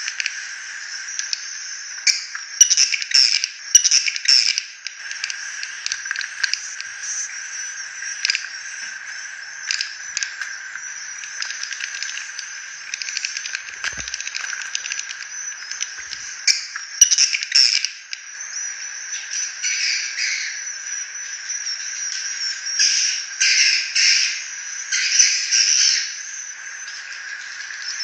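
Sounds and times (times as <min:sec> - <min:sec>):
swiftlets twittering and chirping: 0:04.3 - 0:17.9.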